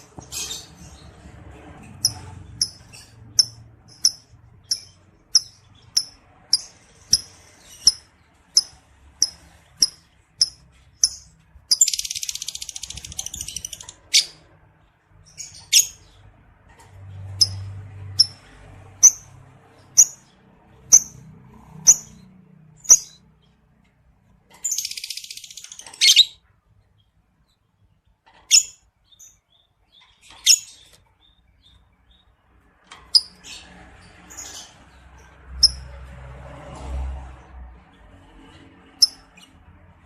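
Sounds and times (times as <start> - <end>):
lovebird chirping: 2.0 - 14.4, 15.3 - 16.1, 19.9 - 20.2, 20.9 - 21.2, 22.8 - 23.3, 24.6 - 26.5, 28.5 - 32.2
lovebird rasping chatter: 2.0 - 14.4.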